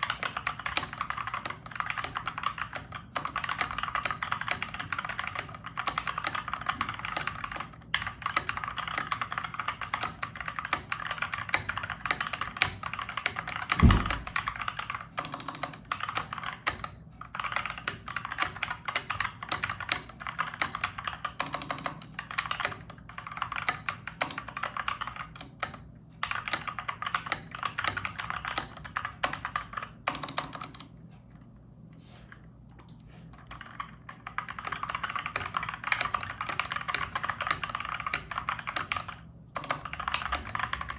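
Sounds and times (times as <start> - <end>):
mechanical keyboard typing: 0.0 - 30.9, 32.8 - 40.9
loud low thump: 13.8 - 14.4.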